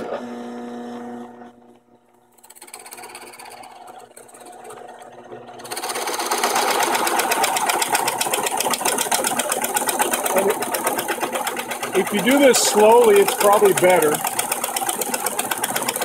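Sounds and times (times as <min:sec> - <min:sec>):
drill press running: 0:00.0 - 0:16.0
drill bit rasping through wood: 0:11.7 - 0:15.9.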